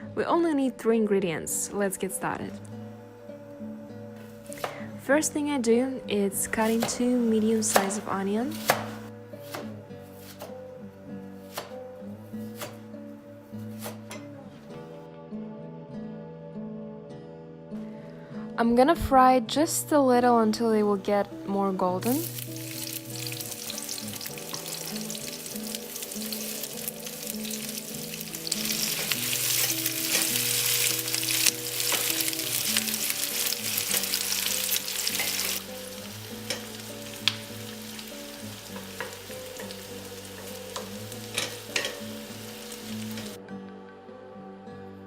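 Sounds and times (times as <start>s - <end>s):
onions sizzling in oil: 22.0s - 43.4s
utensil clicking in a pan: 36.4s - 38.1s, 38.7s - 42.2s.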